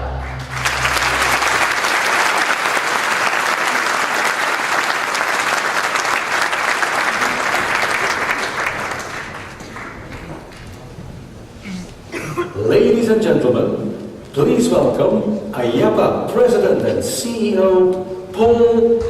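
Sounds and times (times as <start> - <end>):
large audience applauding: 0.0 - 10.9.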